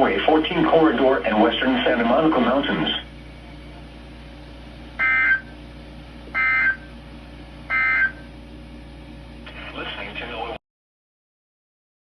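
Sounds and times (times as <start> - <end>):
buzzing two-tone data bursts: 5.0 - 5.5, 6.4 - 6.8, 7.7 - 8.2.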